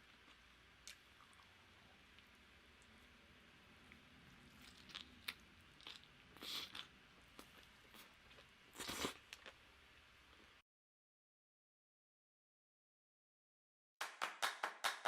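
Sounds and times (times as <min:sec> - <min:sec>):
crunchy eating and chewing: 0:03.8 - 0:09.6.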